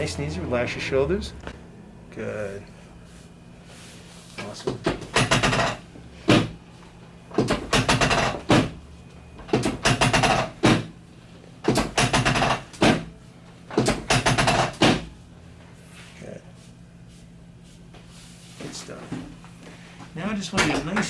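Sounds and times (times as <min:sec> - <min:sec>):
clattering clicks and sharp knock: 0:04.8 - 0:06.5, 0:07.3 - 0:08.7, 0:09.4 - 0:10.9.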